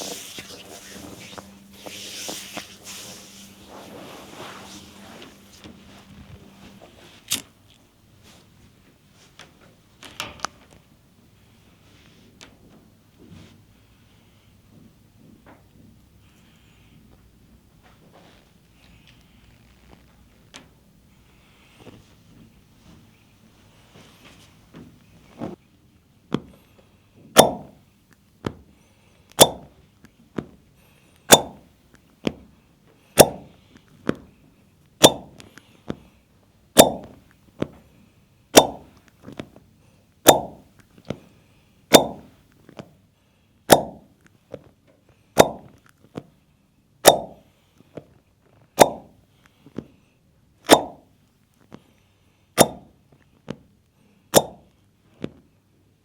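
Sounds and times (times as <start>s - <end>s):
percussive massage slapping skin: 0.0s - 7.5s, 27.4s - 27.8s, 29.4s - 29.7s, 31.3s - 31.7s, 33.2s - 33.6s, 35.0s - 35.4s, 36.8s - 37.7s, 38.6s - 39.0s, 40.3s - 40.7s, 41.9s - 42.3s, 43.7s - 44.1s, 45.4s - 45.7s, 47.0s - 47.4s, 48.8s - 49.1s, 50.7s - 51.1s, 52.6s - 52.9s, 54.4s - 54.7s.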